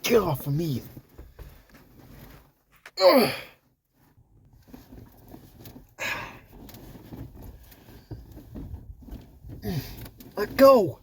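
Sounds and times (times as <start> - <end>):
faint rustling: 0.7 - 2.8, 3.6 - 11.0
man crying out: 3.0 - 3.5
man grunting: 3.0 - 3.6.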